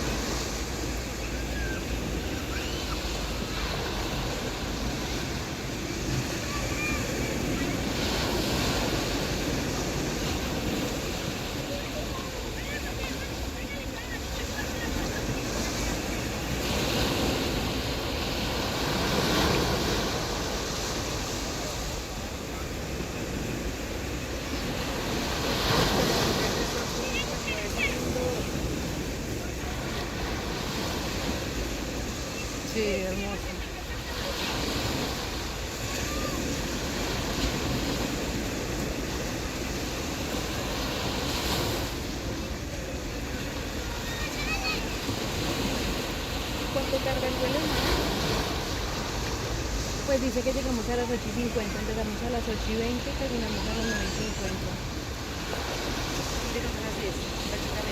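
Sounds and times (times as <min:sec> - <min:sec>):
sea waves washing on beach: 0:00.0 - 0:57.9.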